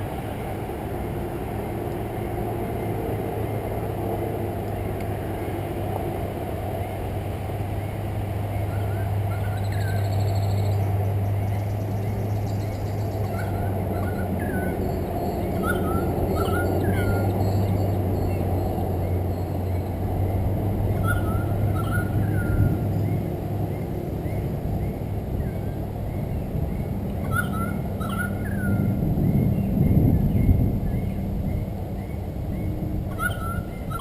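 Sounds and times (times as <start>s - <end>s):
birds chirping: 7.7s - 34.0s.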